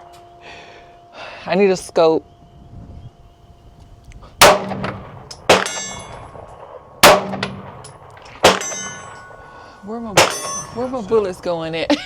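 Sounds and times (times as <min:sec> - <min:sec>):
gunshots with echo: 0:04.4 - 0:09.5
thin metallic ringing: 0:05.3 - 0:06.4, 0:07.7 - 0:11.9.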